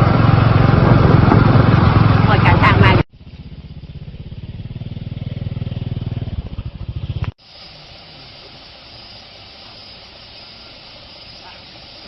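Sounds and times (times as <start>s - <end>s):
small engine running: 0.0s - 12.0s
outdoor background hiss: 2.5s - 12.0s.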